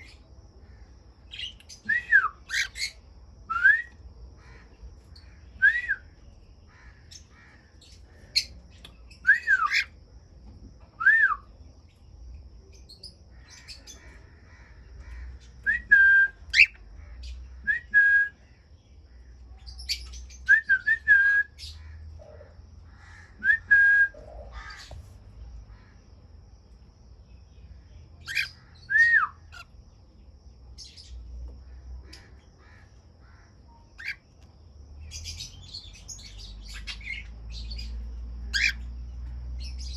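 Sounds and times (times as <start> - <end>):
faint bird chirps: 0.0 - 39.9
cockatiels whistling calls: 1.9 - 2.9, 9.2 - 9.9, 15.7 - 16.8, 38.5 - 38.8
sharp bird squawks: 38.6 - 38.8.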